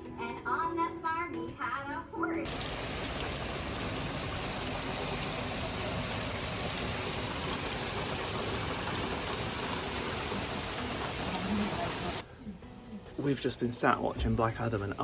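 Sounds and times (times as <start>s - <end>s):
heavy rain pouring: 2.5s - 12.2s.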